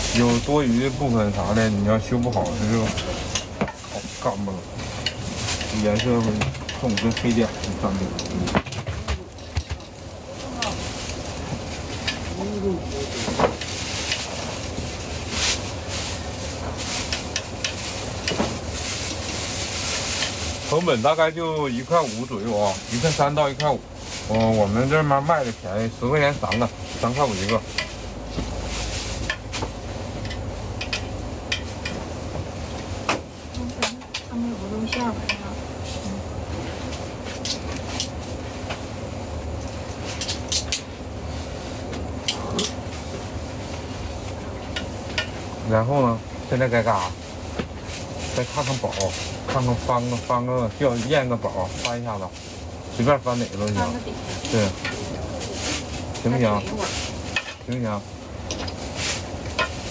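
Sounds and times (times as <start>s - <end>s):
utensils clicking and clinking: 0.0s - 32.3s, 33.5s - 36.0s, 40.0s - 41.0s, 42.0s - 43.0s
griddle low rumble: 0.0s - 59.9s.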